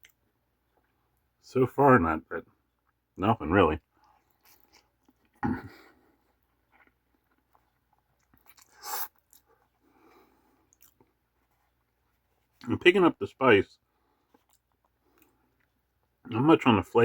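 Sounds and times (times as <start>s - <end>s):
person chewing crunchy food: 4.0s - 12.1s, 14.2s - 15.8s.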